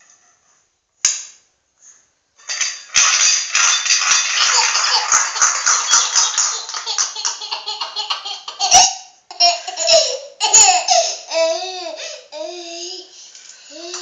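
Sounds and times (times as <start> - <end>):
toddler laughing and squealing: 5.8 - 13.1.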